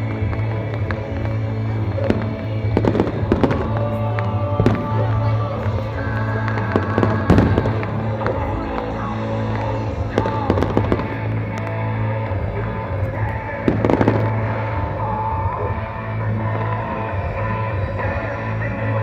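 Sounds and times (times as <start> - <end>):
music: 0.0 - 19.0
fireworks bangs and crackles: 0.1 - 15.7.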